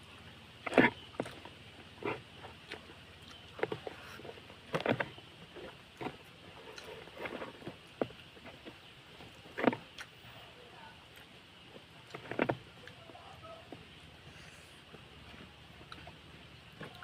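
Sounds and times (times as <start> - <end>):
person chewing food: 0.6 - 10.3, 14.3 - 16.2.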